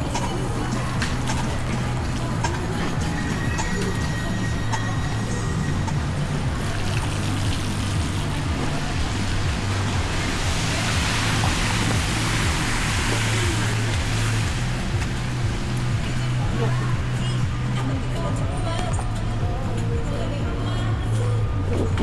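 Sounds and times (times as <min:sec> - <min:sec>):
music with pulsing bass: 0:00.0 - 0:22.0
street noise: 0:00.0 - 0:22.0
vehicle tyre hiss passing: 0:04.6 - 0:16.9.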